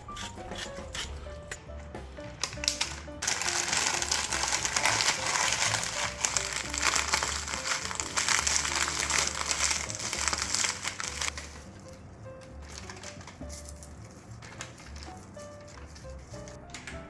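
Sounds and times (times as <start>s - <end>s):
soft background music: 0.0s - 17.0s
dense crackling: 2.4s - 16.6s.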